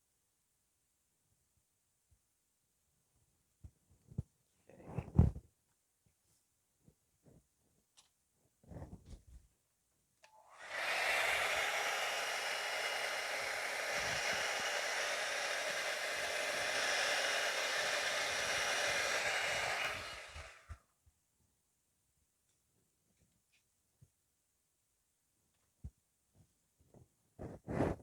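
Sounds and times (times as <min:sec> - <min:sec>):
hair dryer running: 0:10.3 - 0:20.8.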